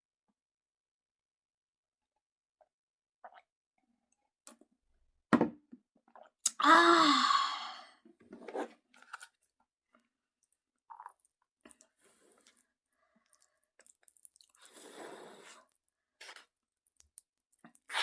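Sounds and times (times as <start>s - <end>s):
person exclaiming: 6.6s - 7.8s
chewing noodles: 10.4s - 18.0s.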